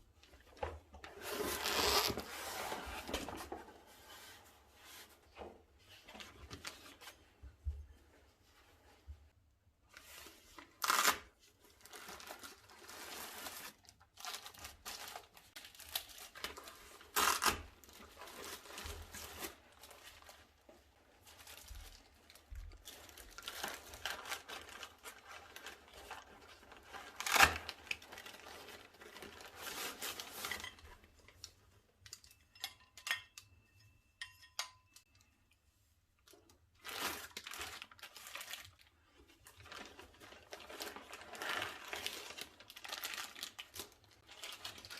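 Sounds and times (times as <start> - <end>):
plastic and paper crinkling: 9.9 - 31.7, 36.2 - 44.9.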